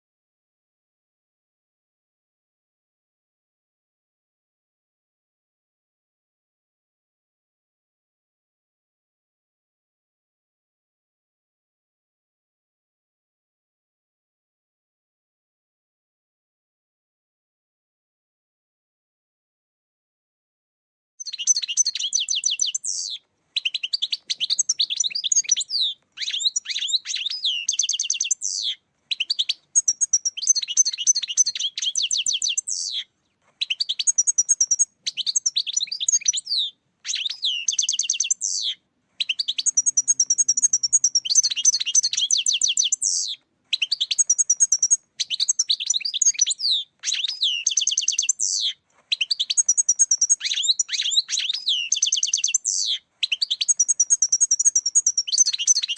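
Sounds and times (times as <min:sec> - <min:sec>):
goldfinch twittering song: 0:21.2 - 0:55.9.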